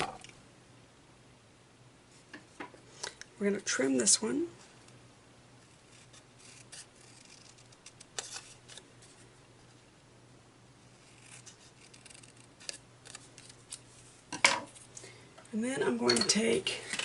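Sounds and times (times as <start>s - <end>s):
scissors snipping paper: 5.9s - 8.8s, 11.1s - 13.8s.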